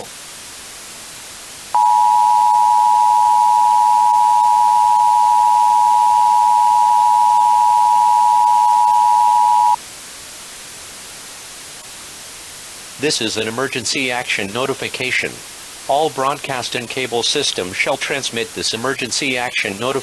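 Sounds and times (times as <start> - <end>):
two-tone alert signal: 1.8 - 9.8.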